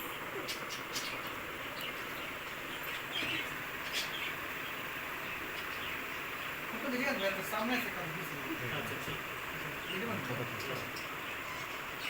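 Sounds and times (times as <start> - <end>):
faint bird chirps: 0.0 - 7.4, 9.8 - 12.0
steady background hiss: 0.0 - 12.0.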